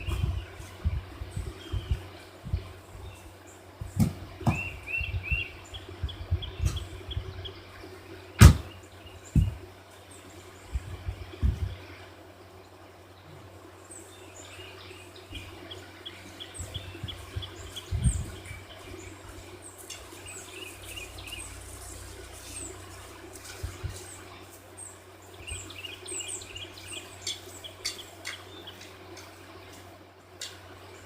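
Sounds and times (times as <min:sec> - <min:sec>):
low thumps: 0:00.0 - 0:02.8, 0:03.8 - 0:07.5, 0:08.4 - 0:09.7, 0:10.7 - 0:11.8
steady low hum: 0:00.0 - 0:31.0
wild birds chirping: 0:00.0 - 0:31.0.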